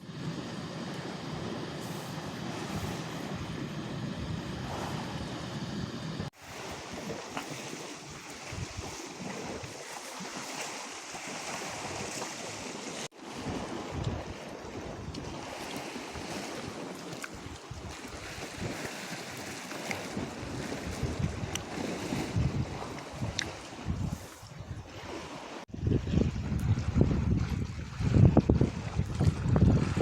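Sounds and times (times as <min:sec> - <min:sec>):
wind buffeting microphone: 0:00.0 - 0:09.8, 0:11.4 - 0:30.0
waves washing against rocks: 0:00.0 - 0:30.0.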